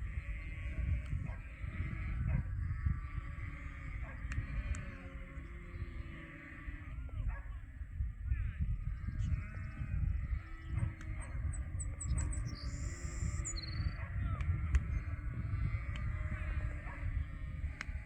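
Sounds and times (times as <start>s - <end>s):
bird chirping: 9.0s - 15.2s.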